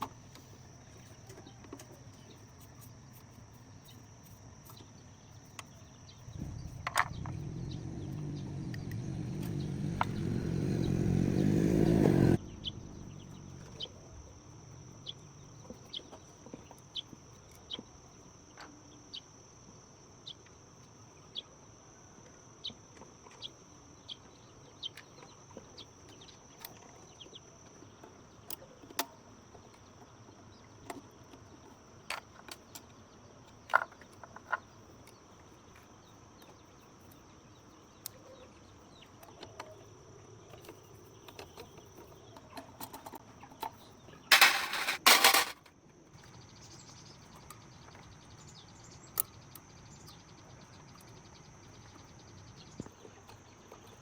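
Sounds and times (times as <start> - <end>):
insects droning: 0.0 - 54.0
loud low rumble: 6.3 - 14.2.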